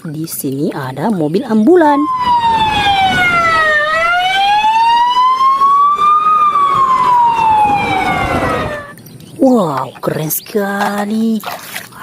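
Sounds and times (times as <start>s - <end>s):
ambulance siren wailing: 1.7s - 9.0s.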